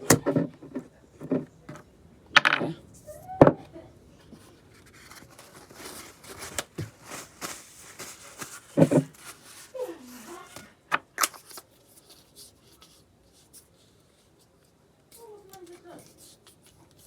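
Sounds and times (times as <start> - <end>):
small objects rustling and clicking: 4.3 - 12.9.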